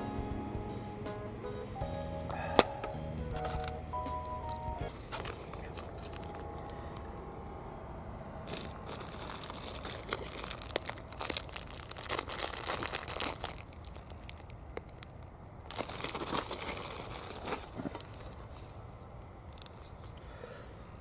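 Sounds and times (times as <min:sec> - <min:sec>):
crinkly material crumpling: 0:05.0 - 0:06.8, 0:08.4 - 0:18.8, 0:19.5 - 0:20.2.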